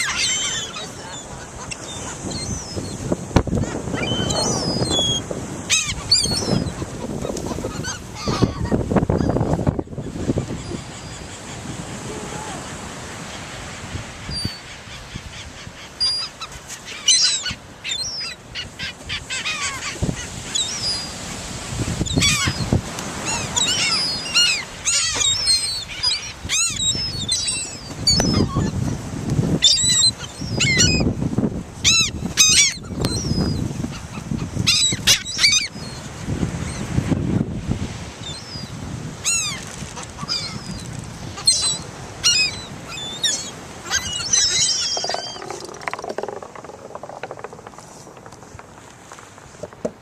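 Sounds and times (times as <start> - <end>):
seagulls squawking: 0.0 - 11.7, 14.3 - 21.1, 22.0 - 28.9, 31.8 - 36.0, 38.3 - 48.2.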